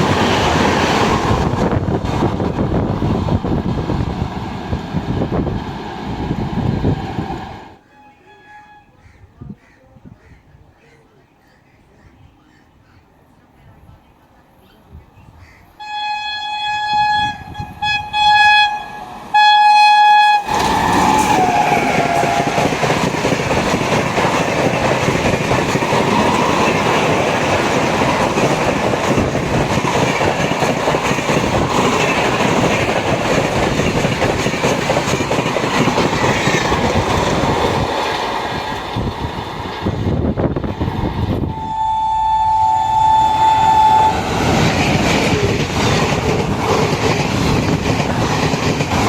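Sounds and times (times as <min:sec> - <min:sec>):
train wheels rumbling on rail: 0:00.0 - 0:07.8, 0:20.0 - 0:49.0
train horn blasts: 0:07.8 - 0:09.1, 0:15.8 - 0:22.8, 0:41.4 - 0:44.7.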